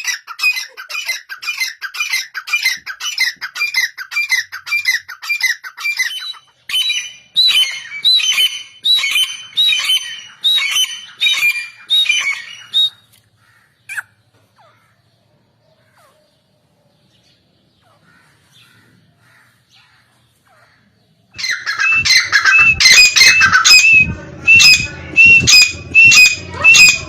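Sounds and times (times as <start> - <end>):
francolin calling: 3.3 - 13.1, 21.4 - 27.0.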